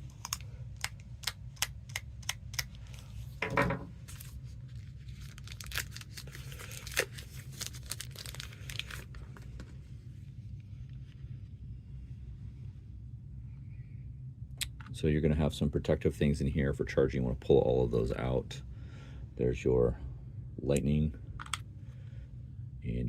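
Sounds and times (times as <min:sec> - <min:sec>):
steady low hum: 0:00.0 - 0:23.0
packaging crinkling: 0:04.0 - 0:09.7.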